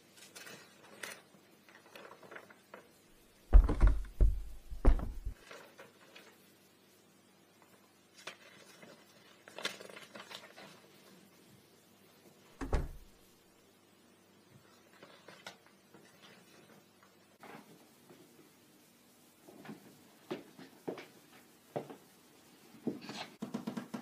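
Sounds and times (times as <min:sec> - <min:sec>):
faint scraping and rustling: 0:00.0 - 0:13.2, 0:14.4 - 0:23.4
loud deep thuds: 0:03.5 - 0:05.4.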